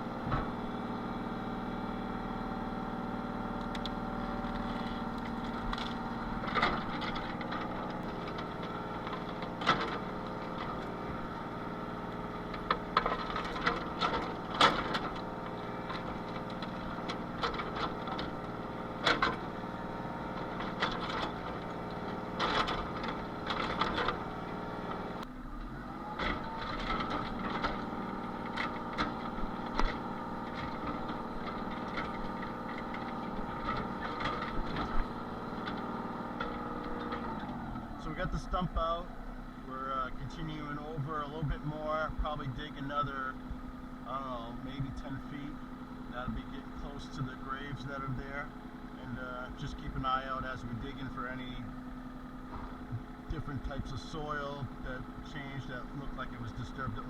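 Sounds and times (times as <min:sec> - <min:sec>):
excavator engine running: 0:00.0 - 0:57.0.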